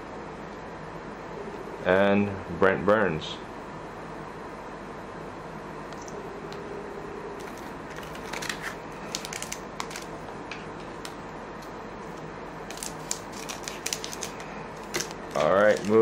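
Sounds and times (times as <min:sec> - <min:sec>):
low room hum: 0:00.0 - 0:16.0
cards and foil pack crinkling: 0:07.4 - 0:10.2, 0:12.6 - 0:16.0.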